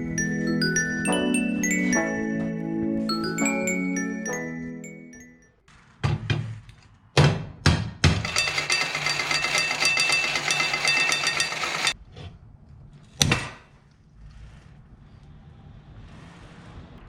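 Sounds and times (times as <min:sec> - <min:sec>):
mechanical fire alarm bell ringing: 0:00.0 - 0:02.4, 0:08.2 - 0:12.0.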